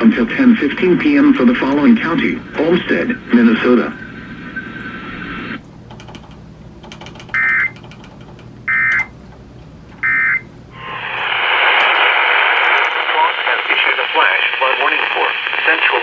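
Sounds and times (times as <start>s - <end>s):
radio hiss: 0.0s - 5.6s, 10.8s - 16.0s.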